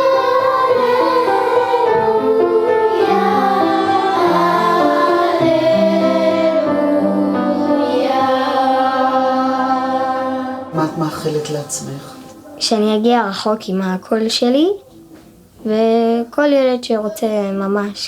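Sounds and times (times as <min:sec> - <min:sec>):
instrumental chord accompaniment: 0:00.0 - 0:13.9.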